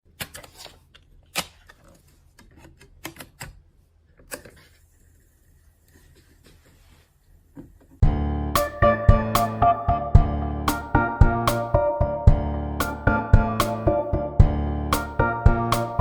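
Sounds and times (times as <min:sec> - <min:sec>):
loud keyboard music: 0:08.0 - 0:16.0.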